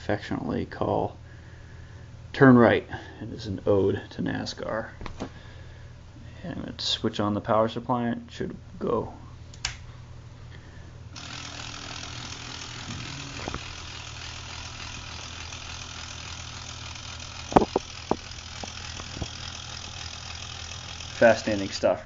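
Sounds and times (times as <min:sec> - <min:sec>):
sharp clicks: 0:09.5 - 0:09.8
small motor whirring gears: 0:11.2 - 0:22.0.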